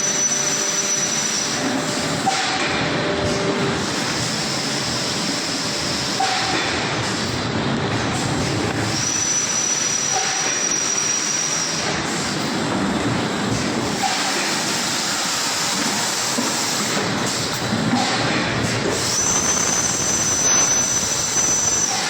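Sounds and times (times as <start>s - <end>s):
high steady whistle: 19.2s - 22.0s.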